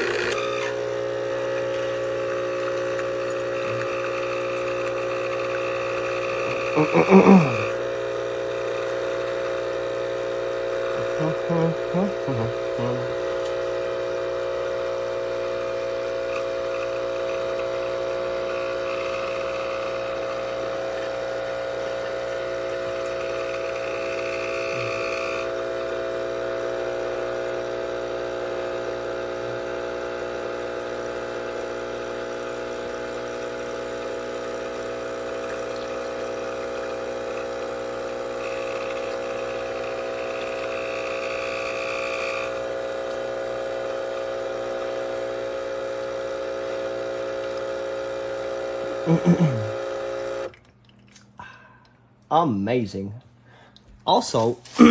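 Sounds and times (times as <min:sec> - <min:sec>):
espresso machine pump buzzing: 0:00.0 - 0:50.6.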